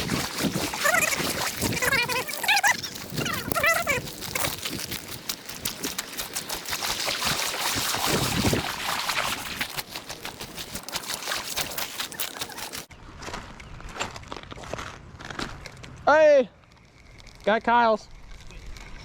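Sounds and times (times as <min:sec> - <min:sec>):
creek water trickling and splashing: 0:00.0 - 0:12.9.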